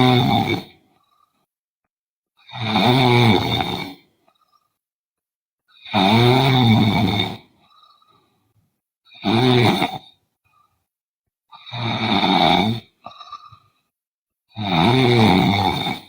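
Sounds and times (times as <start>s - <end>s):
woman snoring: 0.0s - 1.4s, 2.4s - 4.7s, 5.8s - 8.2s, 9.1s - 10.1s, 11.5s - 13.8s, 14.5s - 16.0s.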